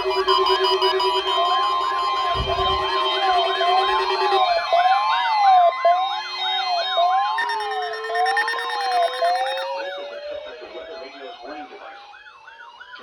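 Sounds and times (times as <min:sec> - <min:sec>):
slowly rising tone: 0:00.0 - 0:04.8
pulsing beep: 0:00.0 - 0:11.5
steady alarm tone: 0:00.0 - 0:11.5
siren-like wails: 0:00.0 - 0:13.0.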